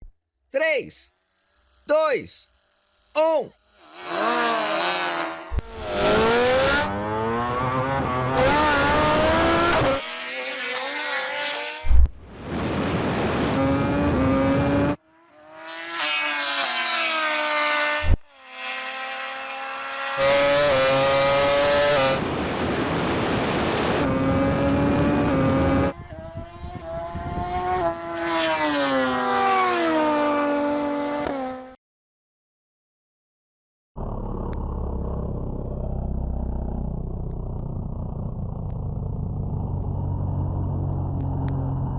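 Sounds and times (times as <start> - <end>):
race vehicles accelerating: 4.2 - 12.0, 12.7 - 31.7.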